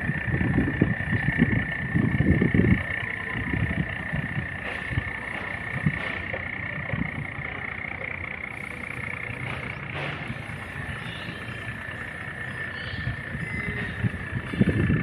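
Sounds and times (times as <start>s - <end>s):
boat engine rumbling: 0.0s - 15.0s
high engine whine: 0.0s - 15.0s.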